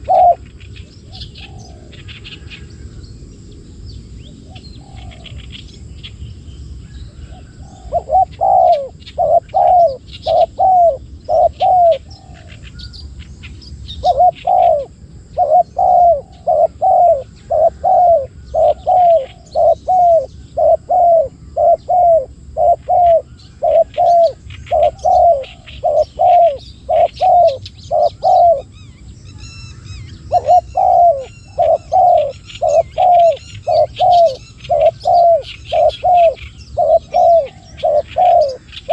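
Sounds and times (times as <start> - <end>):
doves cooing: 0.0 - 3.0, 4.4 - 5.5, 7.1 - 13.2, 13.9 - 28.8, 29.8 - 38.9
small birds chirping faintly: 0.0 - 38.9.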